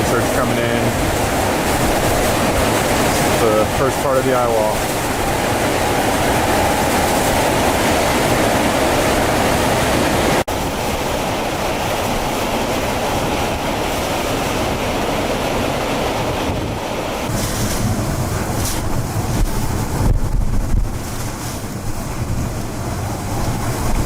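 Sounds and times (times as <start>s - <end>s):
water crashing: 0.0s - 24.0s
wind buffeting microphone: 0.0s - 24.0s
wind rushing: 0.0s - 24.0s.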